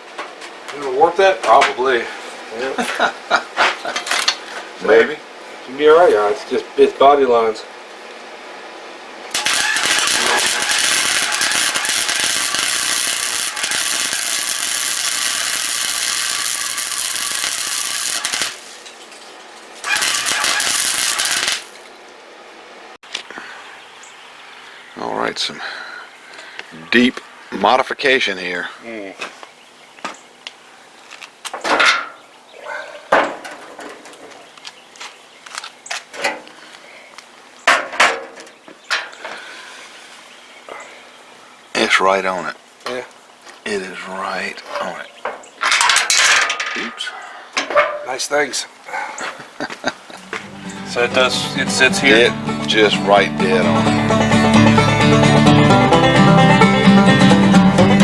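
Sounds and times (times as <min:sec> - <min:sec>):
welding arc crackling: 0:09.3 - 0:19.0, 0:19.8 - 0:21.8, 0:49.9 - 0:54.2
metal parts knocking and clanking: 0:45.6 - 0:46.8.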